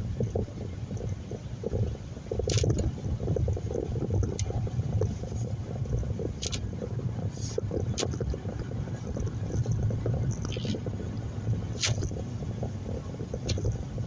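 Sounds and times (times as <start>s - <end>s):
car road and engine rumble: 0.0s - 14.0s
short swishing clicks: 6.4s - 6.7s, 11.8s - 12.2s.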